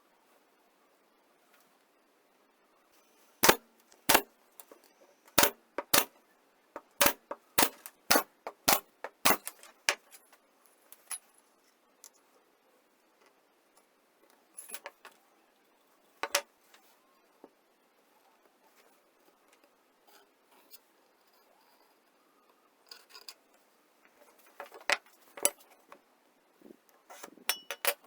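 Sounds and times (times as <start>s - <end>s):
hard objects knocking and clinking: 5.4s - 6.2s, 6.8s - 10.0s, 27.1s - 28.0s.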